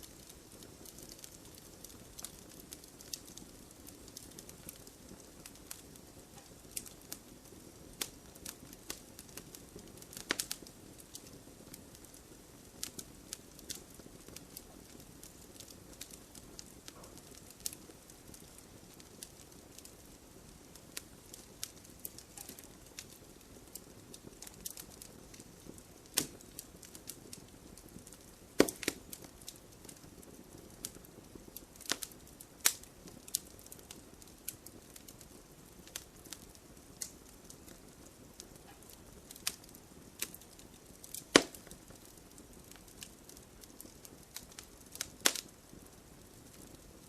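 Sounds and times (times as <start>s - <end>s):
wood fire crackling and popping: 0.0s - 47.0s.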